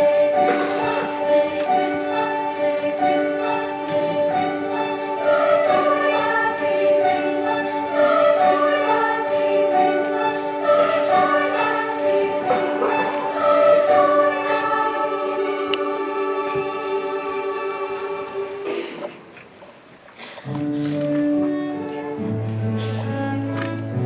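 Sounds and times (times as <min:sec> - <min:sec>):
choir singing: 0:00.0 - 0:19.2.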